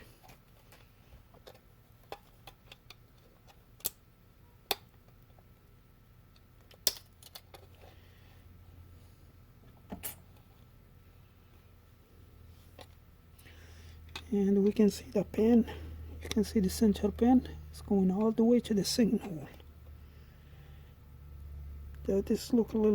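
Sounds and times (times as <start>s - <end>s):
faint low hum: 0.0s - 22.9s
small electronic parts clicking: 6.3s - 7.8s.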